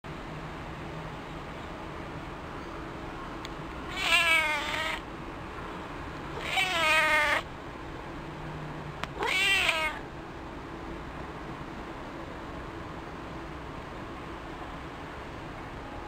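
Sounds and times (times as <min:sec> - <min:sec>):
cat meowing: 0:03.9 - 0:05.0, 0:06.4 - 0:07.5, 0:09.2 - 0:10.0.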